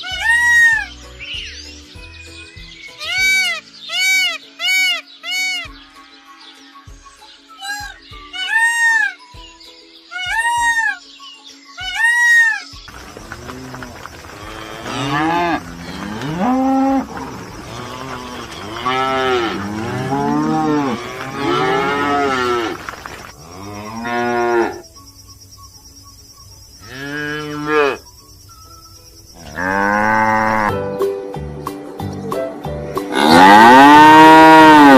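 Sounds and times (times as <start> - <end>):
cattle mooing: 12.9 - 24.8, 33.1 - 34.9.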